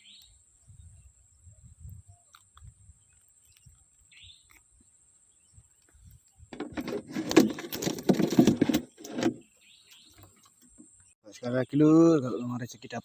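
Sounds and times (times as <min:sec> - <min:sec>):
bird chirp: 0:00.0 - 0:06.5, 0:08.9 - 0:13.0
fishing tackle rattling: 0:06.6 - 0:09.4.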